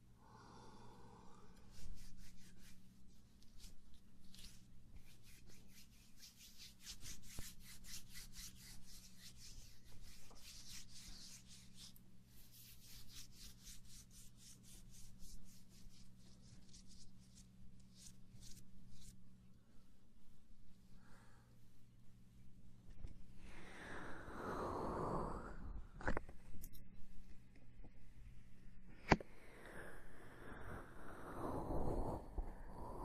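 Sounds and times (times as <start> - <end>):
faint low hum: 0.0 - 33.0
scratchy rubbing strokes: 1.6 - 19.2.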